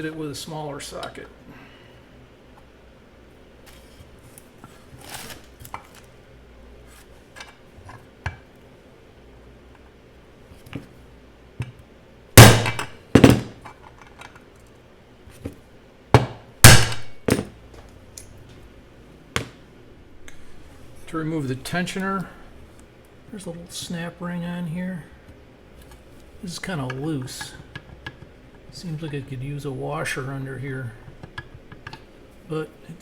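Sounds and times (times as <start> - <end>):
metal strikes on a socket: 16.7 - 17.2.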